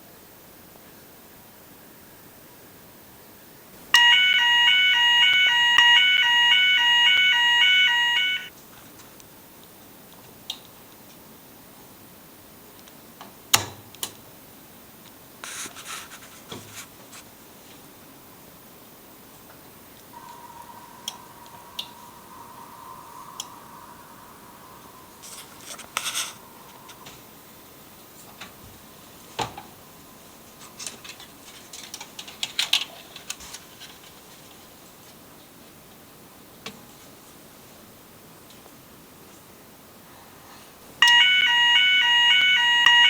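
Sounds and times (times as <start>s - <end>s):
scratching and rubbing: 15.4s - 17.2s, 25.3s - 26.4s.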